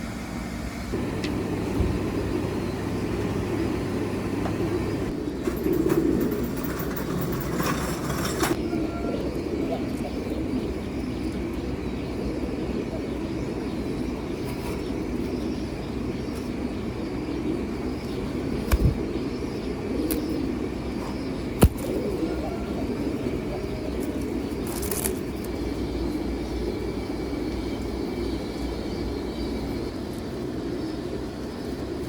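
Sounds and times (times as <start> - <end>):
pigeons cooing: 0.0 - 32.0.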